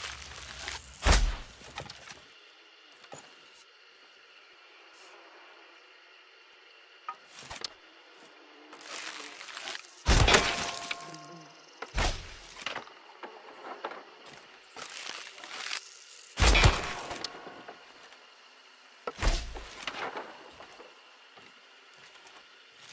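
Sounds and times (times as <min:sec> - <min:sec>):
rustling: 0:00.0 - 0:02.3, 0:08.7 - 0:11.3
sharp arrow impacts: 0:00.5 - 0:01.8, 0:10.0 - 0:11.2, 0:11.9 - 0:12.7, 0:16.4 - 0:17.7, 0:19.1 - 0:20.2.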